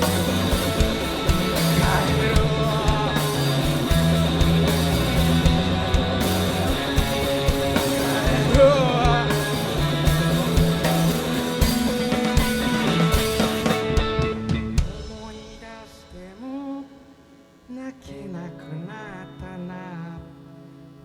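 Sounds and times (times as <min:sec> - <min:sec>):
rock band playing live: 0:00.0 - 0:16.6
electric guitar: 0:00.0 - 0:21.0.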